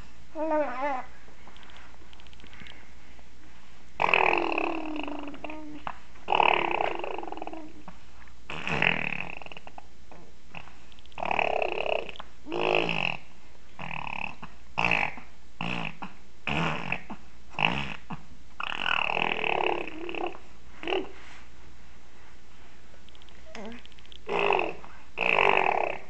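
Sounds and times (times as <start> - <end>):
baby grunting and buzzing: 0.3 - 1.1, 4.0 - 7.9, 8.5 - 9.8, 10.5 - 21.2, 23.5 - 26.0.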